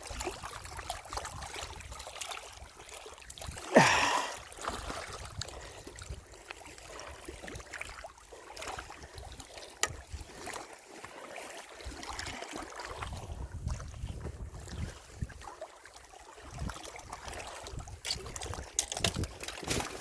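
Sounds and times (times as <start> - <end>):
water lapping: 0.0 - 20.0
wind buffeting microphone: 12.9 - 15.4, 16.4 - 20.0.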